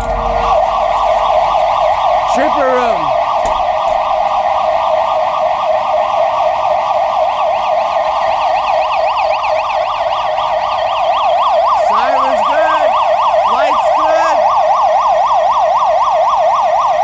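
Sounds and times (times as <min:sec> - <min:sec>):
warbling alarm siren: 0:00.0 - 0:17.0.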